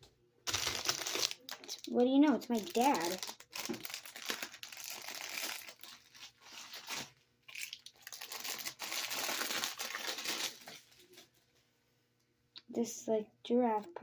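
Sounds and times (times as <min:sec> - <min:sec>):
plastic packaging crinkling: 0:00.5 - 0:11.2.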